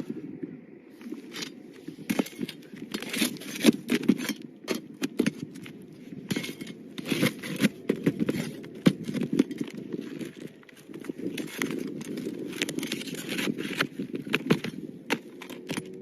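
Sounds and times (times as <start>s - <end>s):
shingles scraping and crackling: 0.9s - 16.0s.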